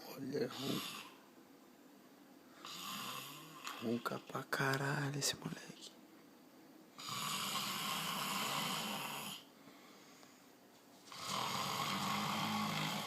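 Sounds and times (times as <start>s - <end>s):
loud snoring: 0.4s - 1.2s, 2.6s - 4.0s, 7.0s - 9.5s, 11.1s - 13.0s.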